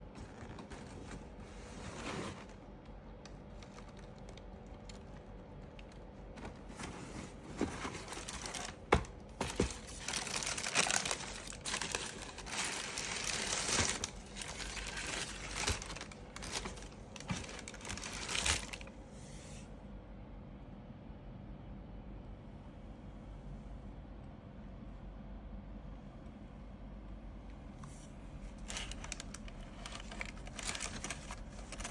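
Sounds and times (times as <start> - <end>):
paper crinkling and tearing: 3.5 - 18.9, 28.6 - 31.9
cardboard knocks and clicks: 6.4 - 10.4.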